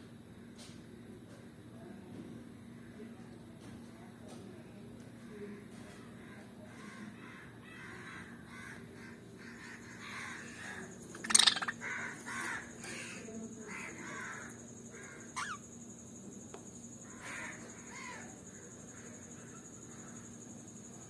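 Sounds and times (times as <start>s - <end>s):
lovebirds chirping harshly: 11.1s - 11.8s
shrill bird call: 11.2s - 11.9s, 15.4s - 15.6s.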